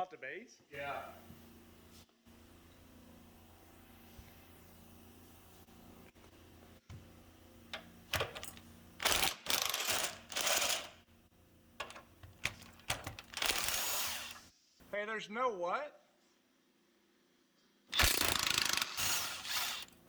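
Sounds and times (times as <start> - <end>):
hand tool clicking and rattling: 7.7 - 11.0, 11.8 - 14.4, 18.0 - 19.9.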